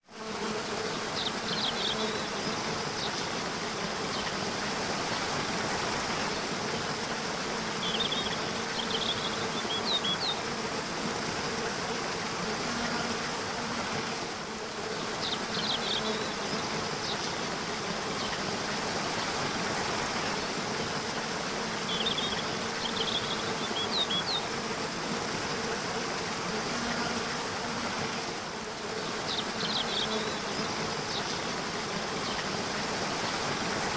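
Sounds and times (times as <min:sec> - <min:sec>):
birds chirping: 0:07.8 - 0:10.4, 0:21.9 - 0:24.5.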